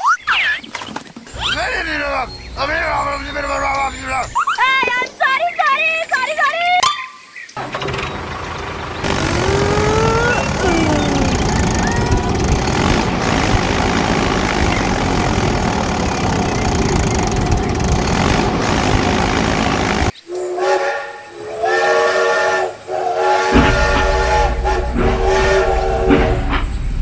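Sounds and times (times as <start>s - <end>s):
loud rushing hiss: 8.7s - 20.2s
multi-note horn blasts: 9.0s - 26.7s.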